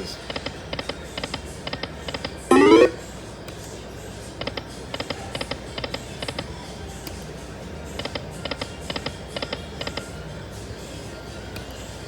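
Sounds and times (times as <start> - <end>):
slot machine electronic ticks: 2.5 - 3.0.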